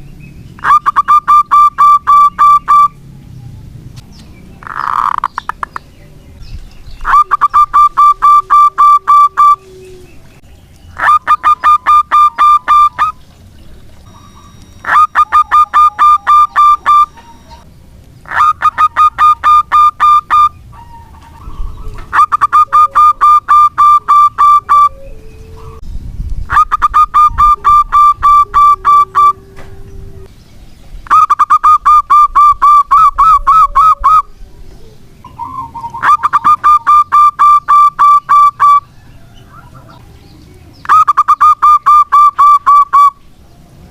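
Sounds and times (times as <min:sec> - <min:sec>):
dove cooing: 0:00.6 - 0:03.0, 0:07.0 - 0:10.4, 0:11.0 - 0:25.8, 0:26.5 - 0:30.3, 0:31.2 - 0:40.2.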